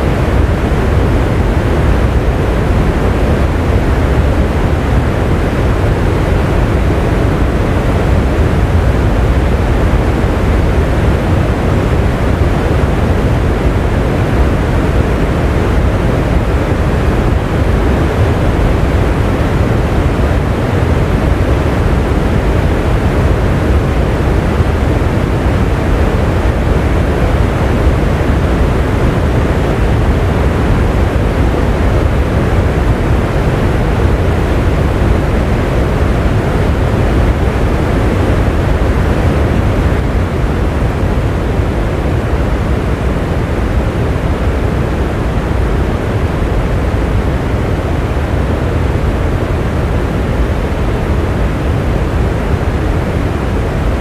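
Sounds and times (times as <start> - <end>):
steady rain: 0.0 - 54.0.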